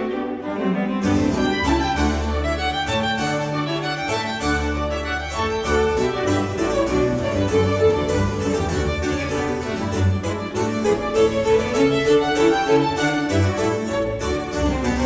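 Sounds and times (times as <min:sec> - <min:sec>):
harpsichord: 0:00.0 - 0:15.0
violin playing: 0:00.0 - 0:15.0.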